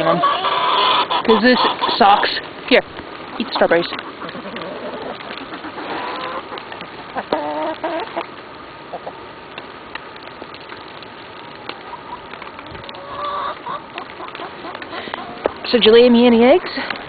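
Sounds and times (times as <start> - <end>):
hens calling and clucking: 0.0 - 17.0.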